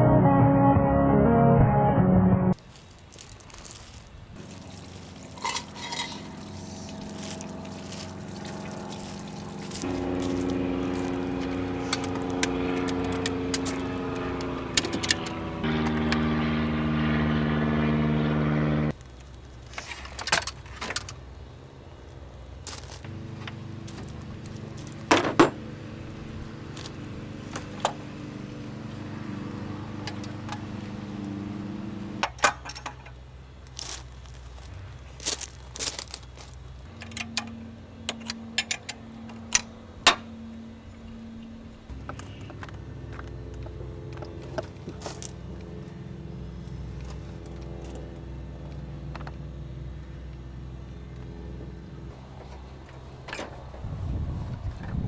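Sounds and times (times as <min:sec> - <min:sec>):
car engine revving: 0:05.3 - 0:19.0, 0:23.0 - 0:32.3.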